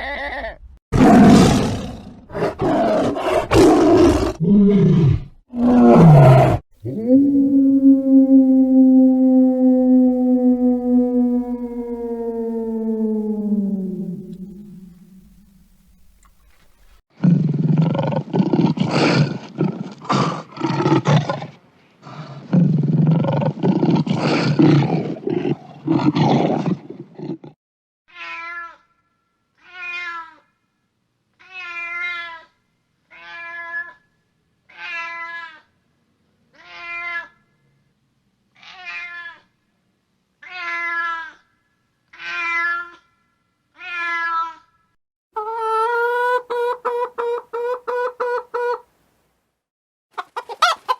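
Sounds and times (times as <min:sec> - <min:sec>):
big cat roaring and growling: 0:01.0 - 0:15.2, 0:17.2 - 0:27.6
domestic cat meowing: 0:29.6 - 0:30.4, 0:40.4 - 0:41.4, 0:42.1 - 0:43.0, 0:43.8 - 0:44.6.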